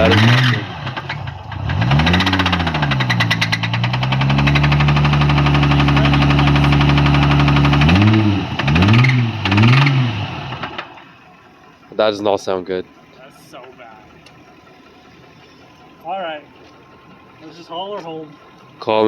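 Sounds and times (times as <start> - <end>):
car engine revving: 0.0 - 11.3.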